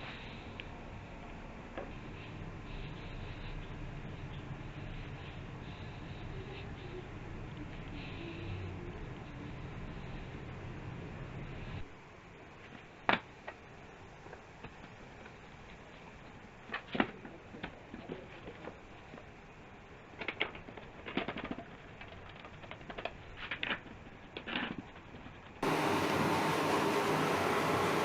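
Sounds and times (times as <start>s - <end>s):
wood and tools clicking: 20.1s - 25.6s.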